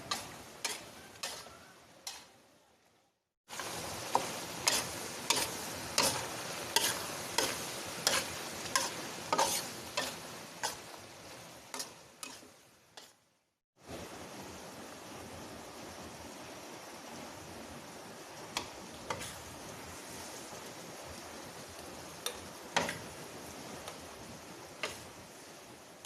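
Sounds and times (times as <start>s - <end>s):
stirring clicks in a pot: 2.0s - 2.3s, 18.5s - 19.3s, 24.8s - 25.1s
steady hiss: 13.8s - 26.0s.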